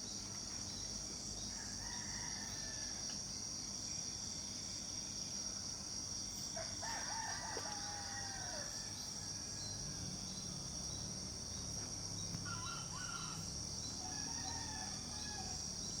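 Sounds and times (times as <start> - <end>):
insects droning: 0.0 - 16.0
rooster crowing: 1.5 - 3.1, 6.6 - 9.7, 12.4 - 15.7.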